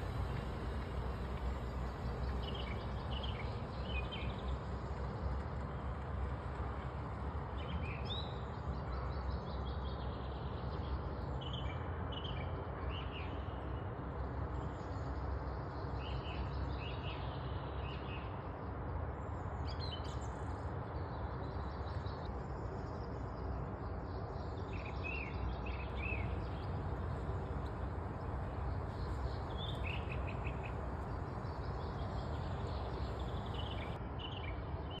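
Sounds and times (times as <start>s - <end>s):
small birds chirping: 0.0s - 5.0s, 19.3s - 35.0s
low background noise: 0.0s - 35.0s.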